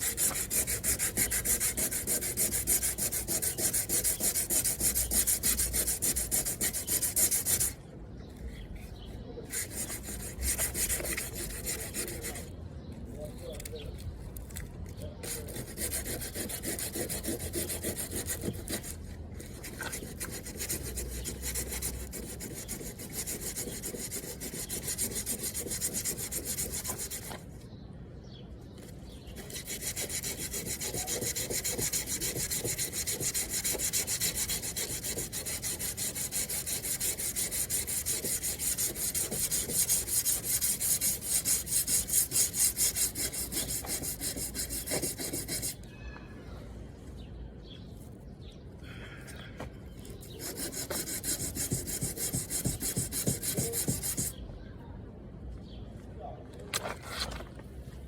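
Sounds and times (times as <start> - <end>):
sandpaper rubbing on metal panel: 0.0 - 7.8, 9.4 - 12.5, 15.2 - 27.6, 29.3 - 45.8, 50.2 - 54.4.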